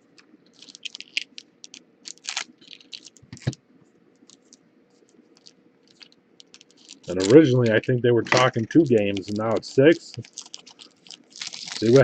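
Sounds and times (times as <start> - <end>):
trading cards clicking and slapping: 7.0 - 10.3, 11.7 - 12.0.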